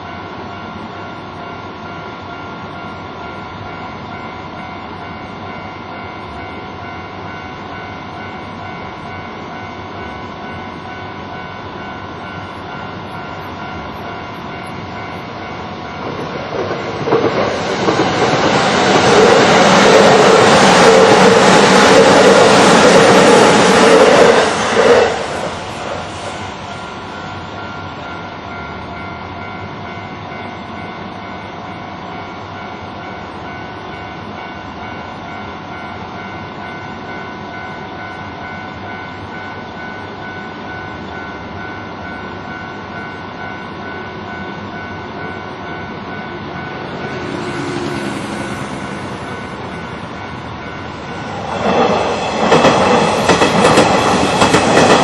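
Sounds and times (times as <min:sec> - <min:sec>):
level crossing warning bell: 0:00.0 - 0:55.0
train wheels clattering over rails: 0:13.1 - 0:26.4, 0:46.4 - 0:55.0.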